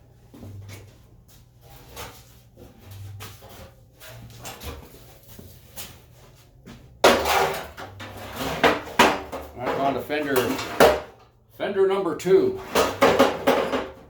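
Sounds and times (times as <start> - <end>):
handling knocks and rustles: 0.3 - 11.1.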